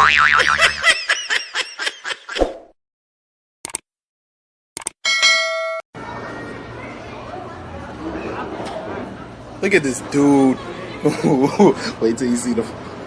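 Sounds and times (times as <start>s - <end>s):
cartoon boing: 0.0s - 0.6s
bright bell ding: 5.1s - 5.8s
background hubbub: 6.0s - 13.0s.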